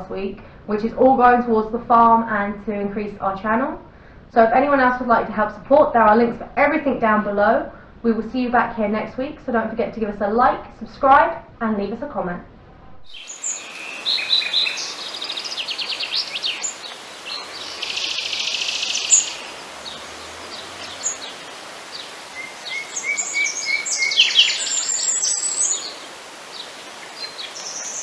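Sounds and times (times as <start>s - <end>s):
songbirds singing: 13.1s - 28.0s.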